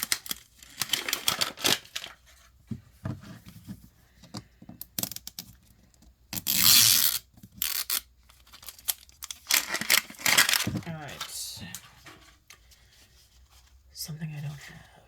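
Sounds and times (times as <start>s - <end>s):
plastic packaging tearing: 0.0s - 2.2s, 6.4s - 11.3s
plastic packaging clicks and scrapes: 0.0s - 2.4s, 6.4s - 11.4s.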